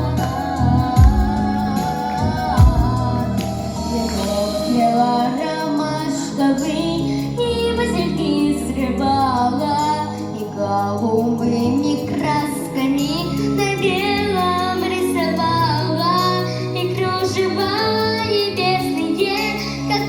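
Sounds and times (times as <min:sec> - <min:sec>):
instrumental accompaniment: 0:00.0 - 0:06.5
girl singing pop song: 0:00.0 - 0:20.0.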